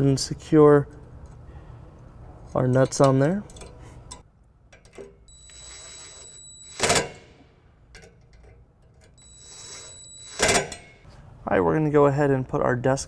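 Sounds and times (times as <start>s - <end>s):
power driver motor whine: 5.3s - 7.4s, 9.2s - 11.0s.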